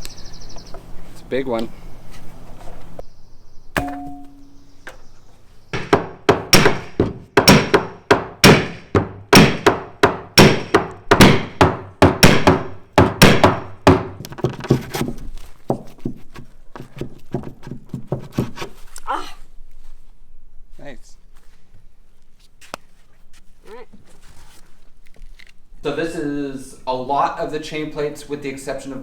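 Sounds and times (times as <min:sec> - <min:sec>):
hard hammer blows: 0:05.8 - 0:14.2.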